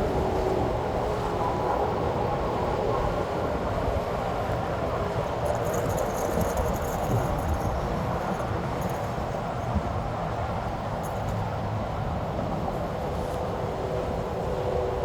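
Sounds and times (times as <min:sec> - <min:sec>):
gusty wind buffeting microphone: 0:00.0 - 0:15.0.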